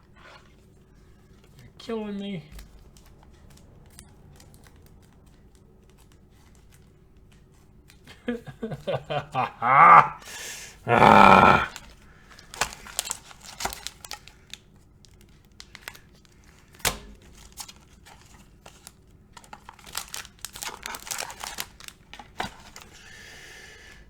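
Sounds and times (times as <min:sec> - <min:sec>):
plastic sleeves crinkling: 0:12.5 - 0:22.9.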